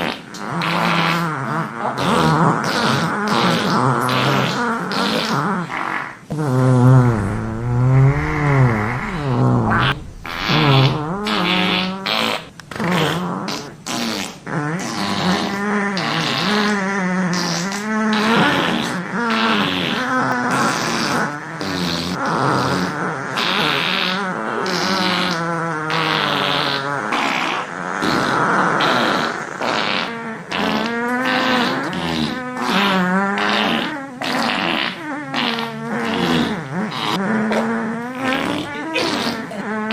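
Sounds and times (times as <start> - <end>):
fart sound effects: 2.2 - 14.4, 28.0 - 39.9.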